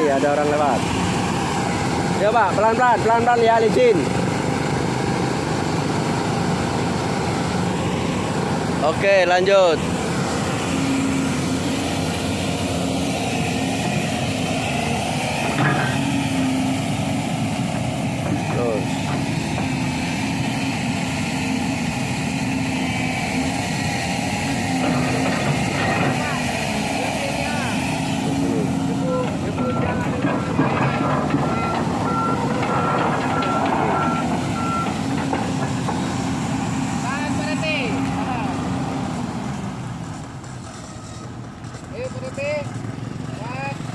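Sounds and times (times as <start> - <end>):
excavator diesel engine running: 0.0 - 43.9
back-up alarm beeping: 31.5 - 35.0.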